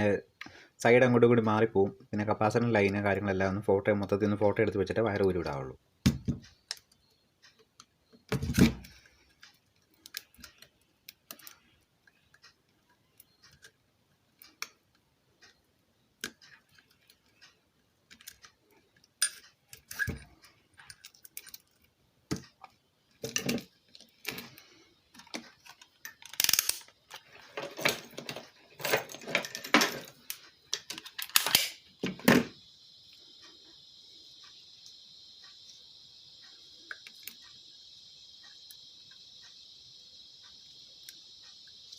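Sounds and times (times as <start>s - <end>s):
high-pitched hiss: 0.0s - 13.6s, 22.3s - 41.9s
tools clicking and clattering on metal: 19.2s - 21.8s, 25.2s - 32.4s.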